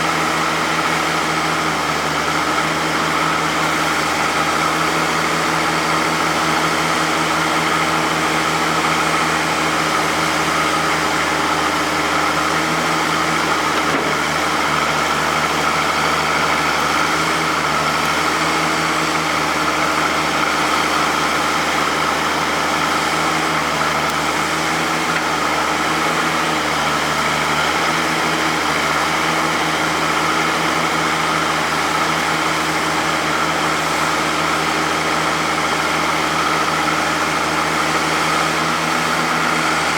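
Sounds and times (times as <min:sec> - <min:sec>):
tractor engine running steadily: 0:00.0 - 0:39.9.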